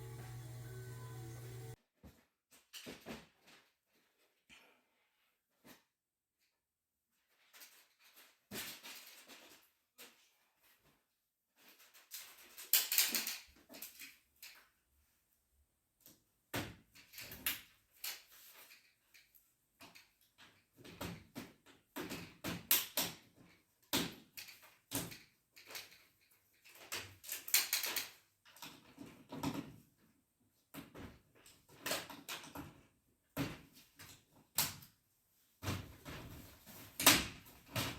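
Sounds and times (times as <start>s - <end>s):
knocks and clatters of handling: 7.3s - 11.0s, 11.6s - 14.8s, 16.5s - 30.1s, 35.5s - 37.9s.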